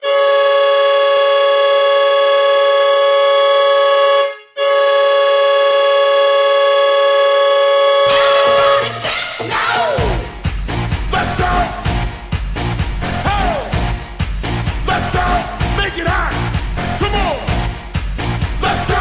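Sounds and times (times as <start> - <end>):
goal horn chord blasts: 0.0 - 9.2.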